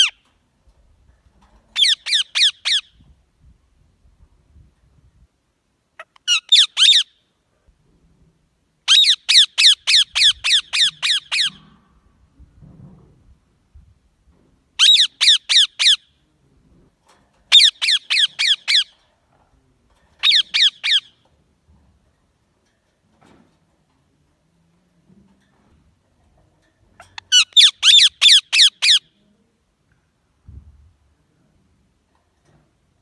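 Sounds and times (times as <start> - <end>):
parrot squawking: 1.8 - 2.9, 6.0 - 7.1, 8.9 - 11.6, 14.8 - 16.0, 17.5 - 18.9, 20.2 - 21.1, 27.0 - 29.1.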